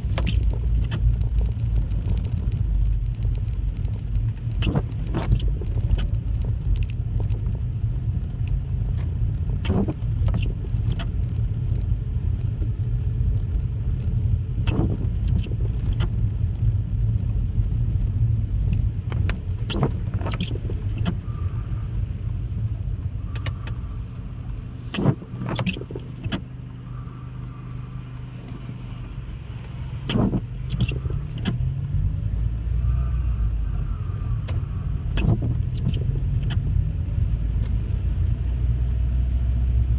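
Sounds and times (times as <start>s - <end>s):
car road and engine rumble: 0.0s - 39.9s.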